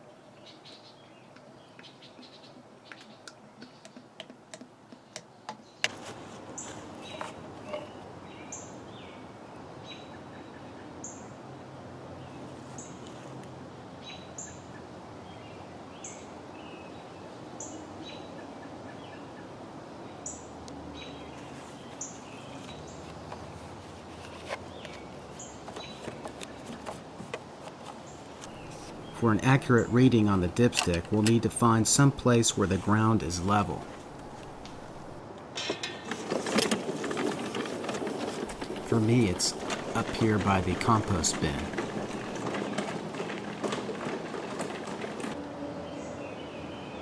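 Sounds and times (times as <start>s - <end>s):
outdoor background noise: 0.0s - 47.0s
bird chirping: 0.1s - 4.1s, 28.0s - 35.2s.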